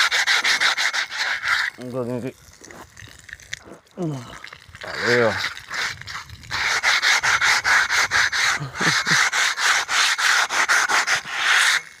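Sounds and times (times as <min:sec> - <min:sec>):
hand sanding with sandpaper: 0:00.0 - 0:01.9, 0:04.9 - 0:12.0.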